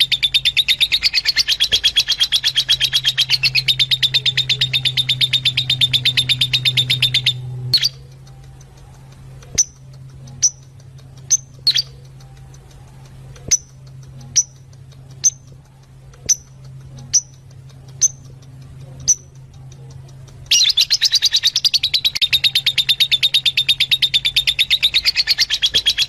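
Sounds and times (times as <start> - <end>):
lovebirds chirping shrilly: 0.0 - 8.4, 10.4 - 12.2, 20.5 - 26.0
steady low hum: 0.0 - 26.0.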